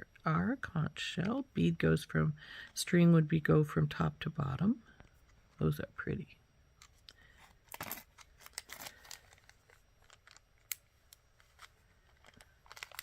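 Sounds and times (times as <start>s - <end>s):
plastic bags rustling: 7.6s - 10.8s, 11.4s - 13.0s.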